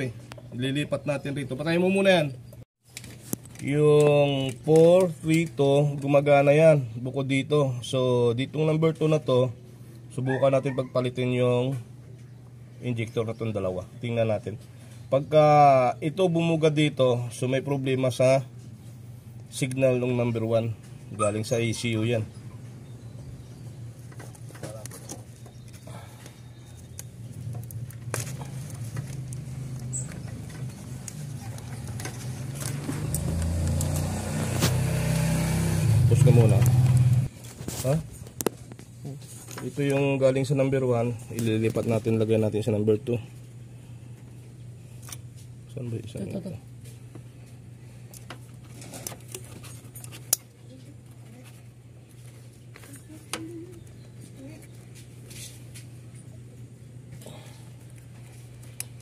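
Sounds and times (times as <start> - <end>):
steady low hum: 11.1 - 35.0, 35.6 - 59.0
engine parts clicking and scraping: 23.9 - 35.3, 48.1 - 55.8.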